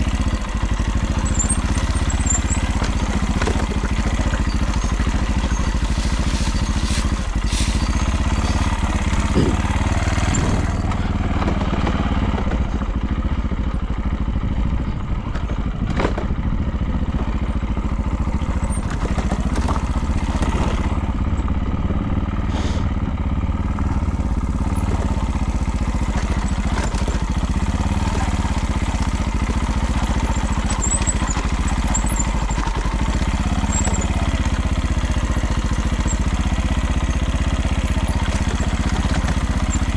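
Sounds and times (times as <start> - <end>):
engine clattering rattle: 0.0 - 39.9
motorcycle engine running: 0.0 - 39.9.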